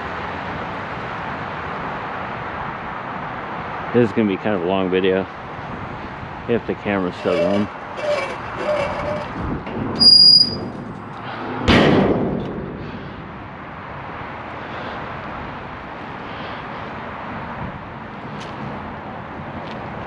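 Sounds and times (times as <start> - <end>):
high-pitched squeak: 7.0 - 9.4, 10.0 - 10.7
loud thump: 11.7 - 13.2.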